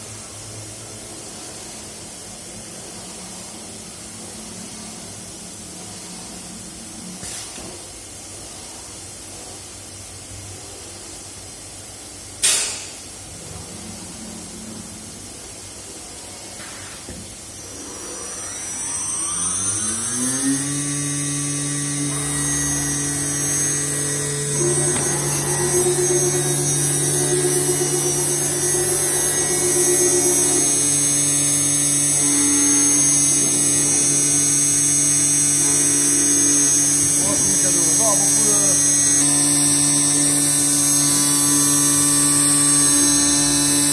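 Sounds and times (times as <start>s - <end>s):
compressed air hiss: 7.2s - 7.9s
machine low hum: 12.8s - 16.6s, 17.3s - 43.9s.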